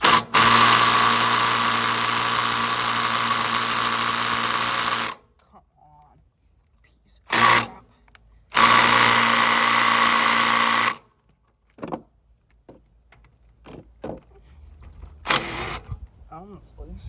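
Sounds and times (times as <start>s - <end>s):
power tool running: 0.0s - 5.2s, 7.3s - 7.8s, 8.5s - 11.0s, 15.2s - 15.9s.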